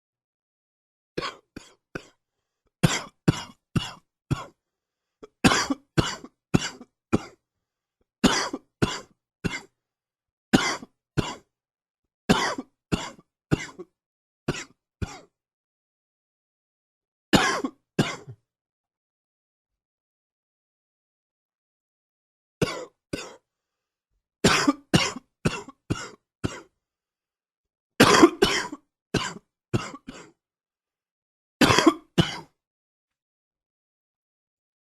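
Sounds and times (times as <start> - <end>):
man hacking coughs: 1.2 - 2.2, 2.8 - 4.6, 5.4 - 7.4, 8.2 - 9.8, 10.6 - 11.5, 12.3 - 13.9, 17.4 - 18.4, 22.6 - 23.4, 24.4 - 26.7, 28.0 - 30.4, 31.6 - 32.6.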